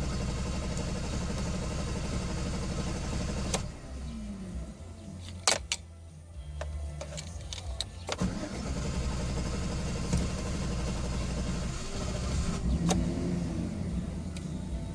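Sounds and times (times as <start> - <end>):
engine cranking and starting: 0.0 - 3.7, 8.1 - 14.5.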